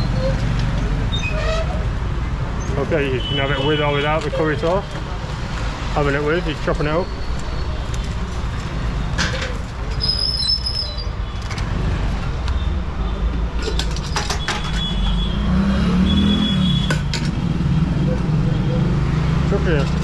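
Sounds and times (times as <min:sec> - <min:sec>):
vehicle engines rumbling: 0:00.0 - 0:20.0.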